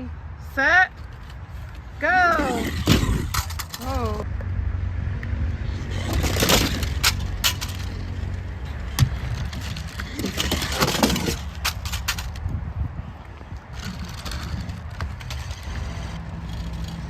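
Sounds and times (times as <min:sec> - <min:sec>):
toy cars clattering down a slide: 0:02.4 - 0:04.2, 0:05.9 - 0:08.1, 0:08.9 - 0:12.4, 0:13.7 - 0:17.0.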